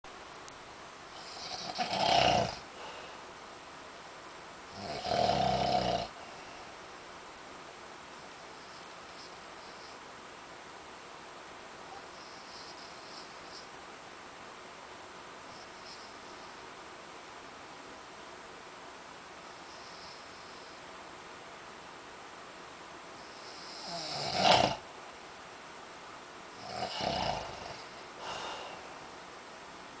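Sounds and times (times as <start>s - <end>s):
man snoring: 1.2s - 2.7s, 4.7s - 6.2s, 23.3s - 24.8s, 26.6s - 28.8s.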